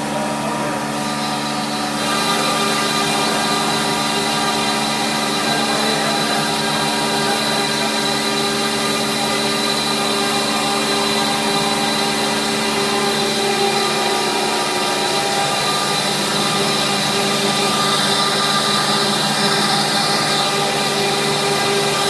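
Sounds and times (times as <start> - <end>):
machine hum: 0.0 - 22.0.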